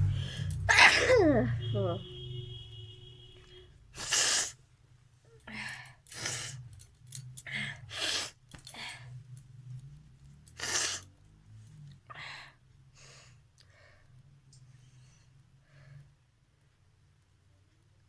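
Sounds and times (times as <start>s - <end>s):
person sneezing: 0.7s - 1.5s
breathy nasal bursts: 4.0s - 4.6s, 10.6s - 11.1s.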